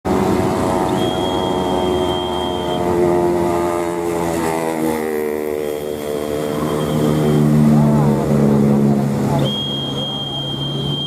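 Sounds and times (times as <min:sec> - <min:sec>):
diesel truck engine labouring: 0:00.1 - 0:11.0
thin high whine: 0:00.6 - 0:04.0.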